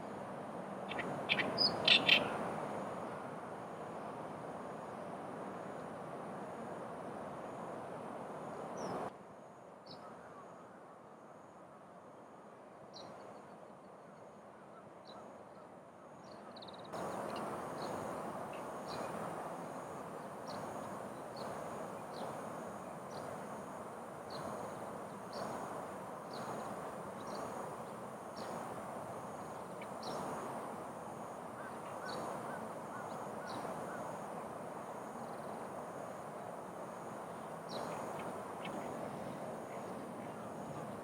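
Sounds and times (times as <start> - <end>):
background hiss: 0.0 - 41.0
birds chirping: 0.9 - 2.4.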